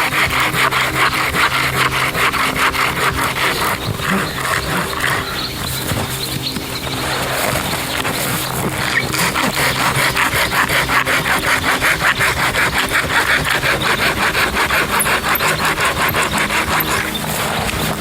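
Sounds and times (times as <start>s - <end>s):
hand saw cutting wood: 0.0s - 18.0s.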